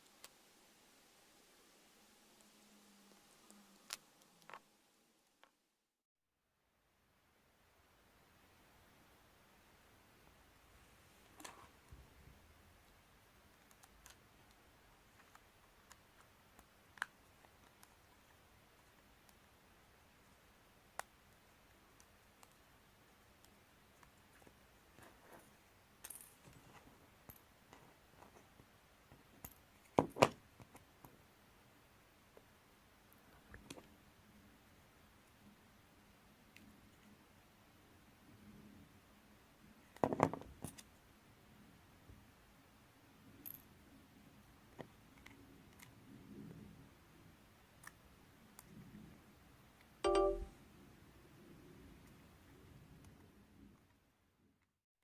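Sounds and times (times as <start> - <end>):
faint small clicks: 21.0 - 22.6, 44.7 - 46.0, 47.8 - 48.8.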